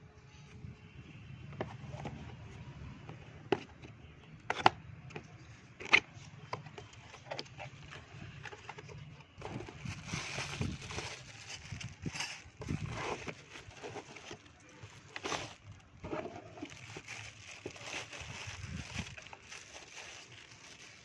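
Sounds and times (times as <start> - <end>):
packaging rustling: 6.7 - 21.0.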